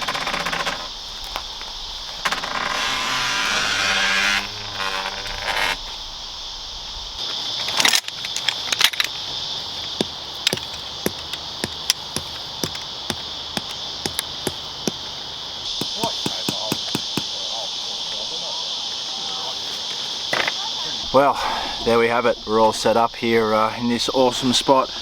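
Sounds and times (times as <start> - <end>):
rough mechanical noise: 0.0 - 17.1
insects droning: 0.0 - 25.0.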